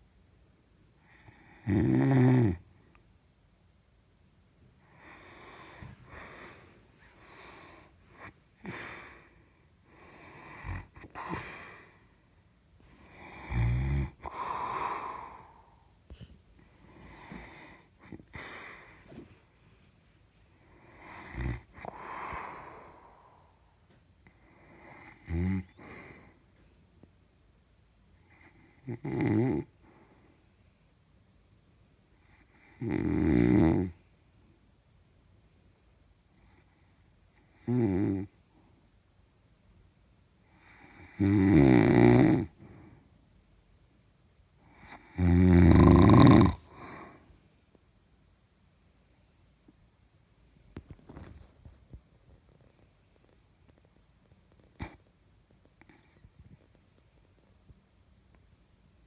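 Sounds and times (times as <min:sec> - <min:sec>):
low rattling snores: 0:01.1 - 0:02.6, 0:13.0 - 0:15.6, 0:20.8 - 0:23.6, 0:25.0 - 0:25.7, 0:28.3 - 0:29.7, 0:32.4 - 0:34.0, 0:37.5 - 0:38.3, 0:40.6 - 0:42.6, 0:44.8 - 0:47.1
breathy hiss of breath: 0:04.8 - 0:19.5, 0:20.7 - 0:26.6.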